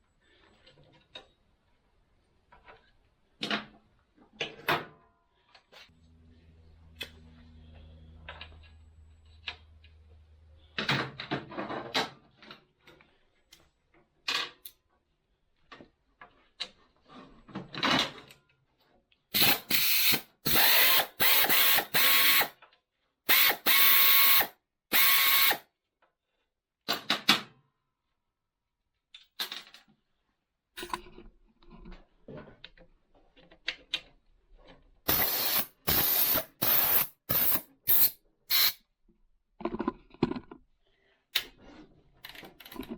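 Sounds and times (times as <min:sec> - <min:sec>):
power tool undoing fasteners: 0:19.4 - 0:22.5, 0:23.3 - 0:25.6, 0:35.1 - 0:38.8.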